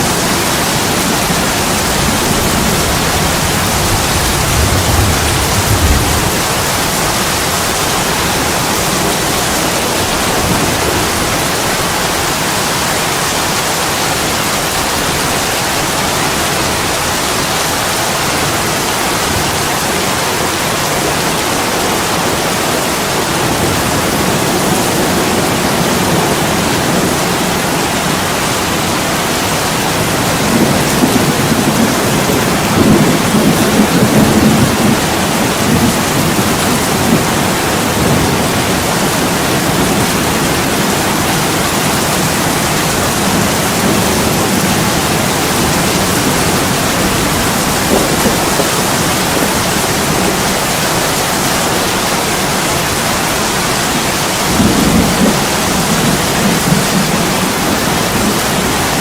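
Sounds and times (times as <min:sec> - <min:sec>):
heavy rain on window glass: 0:00.0 - 0:59.0
low thunder rumble: 0:00.4 - 0:12.4, 0:54.1 - 0:58.7.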